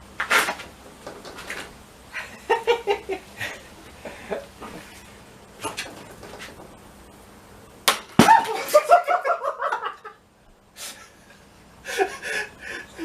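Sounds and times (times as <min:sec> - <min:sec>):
people laughing: 0:08.5 - 0:10.2.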